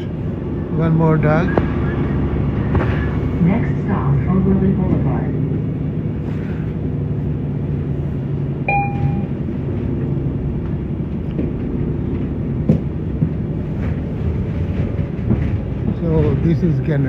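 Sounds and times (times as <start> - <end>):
bus engine and road rumble: 0.0 - 17.0
short electronic beep: 8.7 - 9.3.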